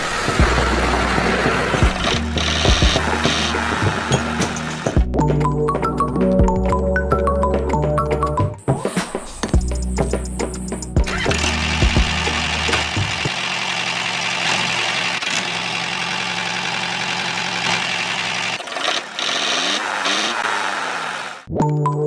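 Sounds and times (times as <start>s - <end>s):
small tractor engine running: 0.0s - 5.1s, 11.0s - 21.5s.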